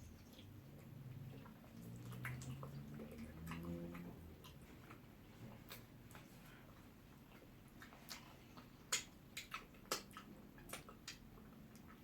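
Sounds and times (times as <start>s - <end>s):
mouths chewing and smacking: 0.0s - 12.0s.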